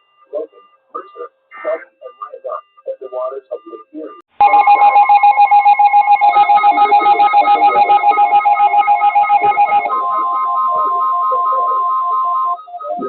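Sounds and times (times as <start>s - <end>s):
electronic warbling alert tone: 4.4s - 13.0s.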